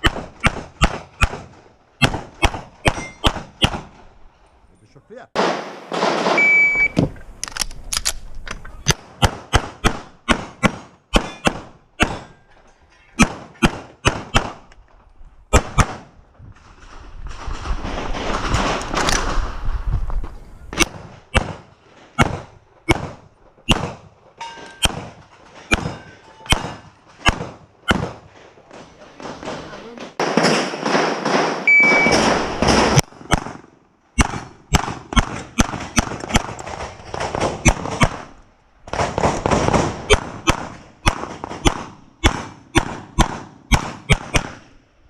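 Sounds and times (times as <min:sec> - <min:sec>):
pistol shots: 0:00.0 - 0:04.0, 0:08.9 - 0:12.3, 0:13.2 - 0:14.6, 0:20.7 - 0:24.1, 0:24.8 - 0:28.3, 0:30.2 - 0:44.7.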